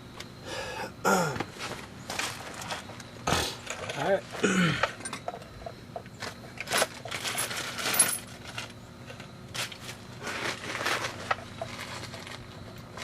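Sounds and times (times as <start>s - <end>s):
small metal objects clinking: 6.2s - 13.0s.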